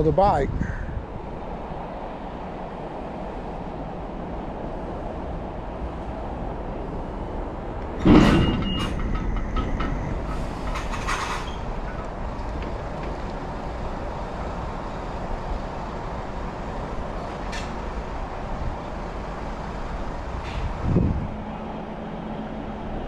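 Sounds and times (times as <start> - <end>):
trailer rattling: 3.4 - 23.0
diesel lorry engine running: 4.4 - 23.0
loud bang of wheels on kerb: 8.0 - 11.5.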